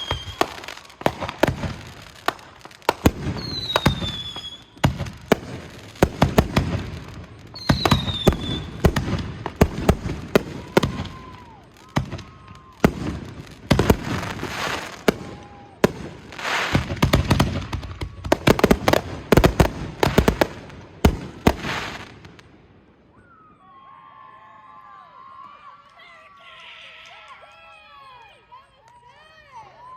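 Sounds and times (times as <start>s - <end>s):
firework whistles: 0.0s - 2.4s, 3.0s - 5.4s, 6.0s - 9.2s, 9.8s - 18.8s
firework bangs: 0.0s - 22.6s
firework crackling: 0.0s - 22.6s.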